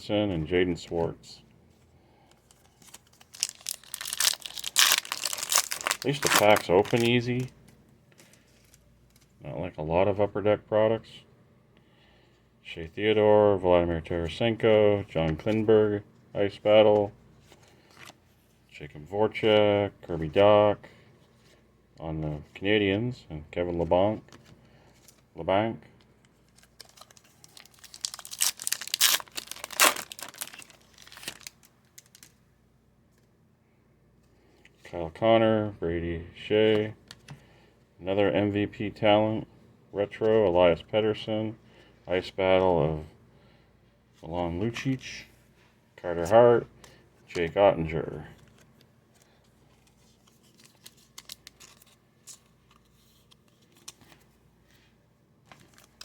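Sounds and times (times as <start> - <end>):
card pack wrapper tearing and crinkling: 2.5 - 7.5, 26.5 - 32.4, 49.2 - 52.9, 55.5 - 56.0.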